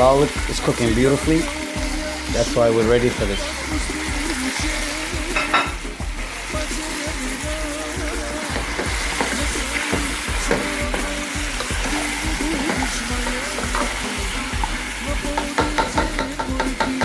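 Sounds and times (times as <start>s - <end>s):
meat frying in a pan: 0.0s - 17.0s.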